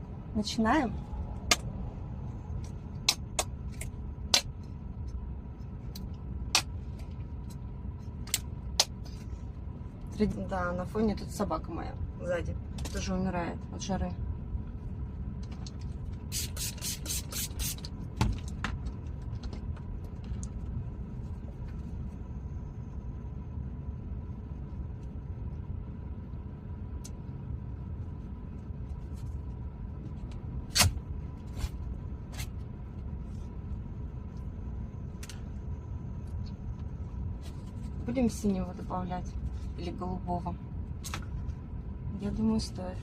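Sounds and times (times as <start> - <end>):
low rumble: 0.0 - 16.3, 17.8 - 43.0
faint steady hum: 0.0 - 43.0.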